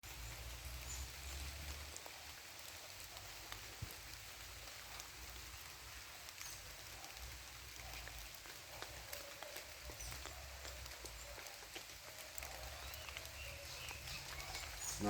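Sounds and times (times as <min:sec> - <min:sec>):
faint outdoor hiss: 0:00.0 - 0:15.0
small ticks: 0:06.3 - 0:14.8.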